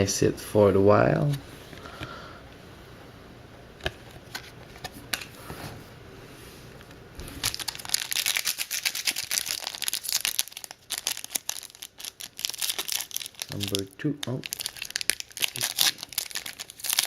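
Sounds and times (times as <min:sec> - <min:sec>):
packaging crinkling: 0:07.2 - 0:17.0.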